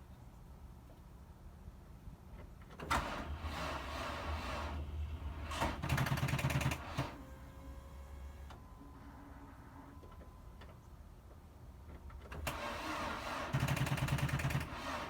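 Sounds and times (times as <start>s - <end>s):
car starter whirring: 2.8s - 8.5s, 12.3s - 15.0s
starter solenoid rapid clicking: 5.4s - 7.2s, 12.2s - 15.0s.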